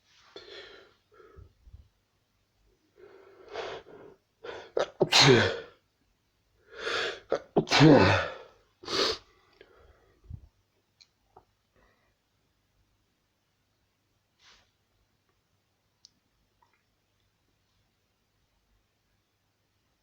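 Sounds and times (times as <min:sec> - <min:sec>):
person sneezing: 0:04.5 - 0:05.8, 0:06.8 - 0:09.2.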